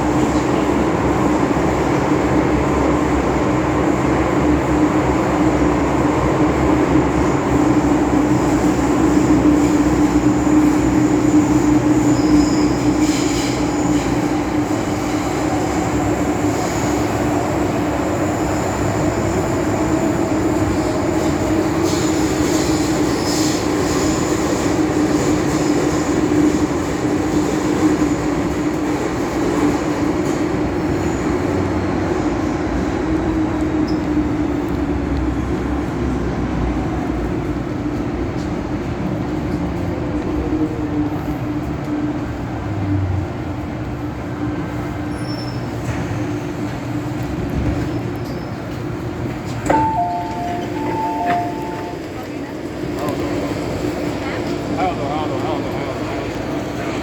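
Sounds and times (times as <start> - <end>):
wheel squeals: 10.6 - 14.1, 45.1 - 46.5.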